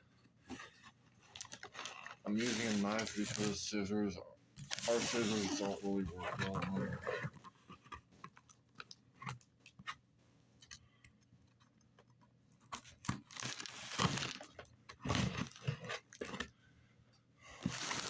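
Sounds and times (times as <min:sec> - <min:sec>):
knife ripping through package: 0:13.3 - 0:14.5, 0:17.6 - 0:18.0.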